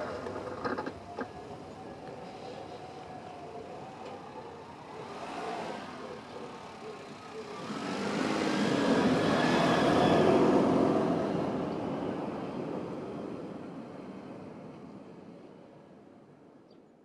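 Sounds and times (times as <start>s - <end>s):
road vehicle passing by: 0.0s - 15.4s.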